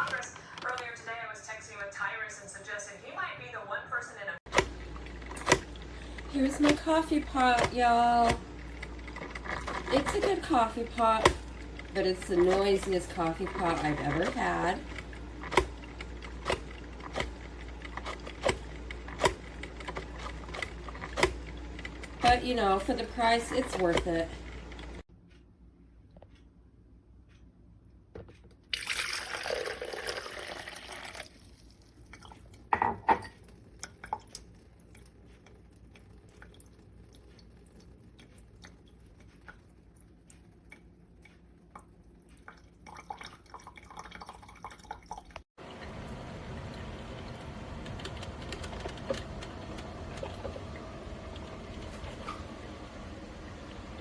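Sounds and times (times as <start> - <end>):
coffee maker hissing and gurgling: 4.5 - 25.0, 28.8 - 31.3, 45.6 - 48.4.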